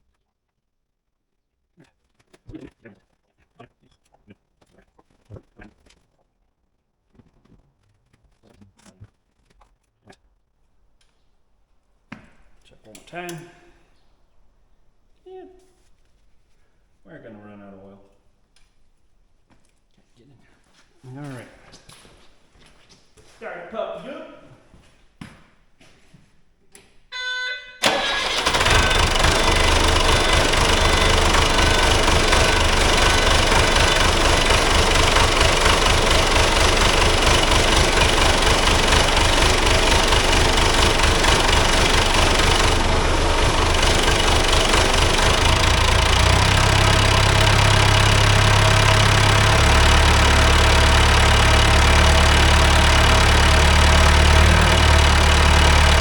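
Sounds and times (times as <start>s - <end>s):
short tone: 27.1s - 28.2s
diesel engine starting and idling: 27.2s - 56.0s.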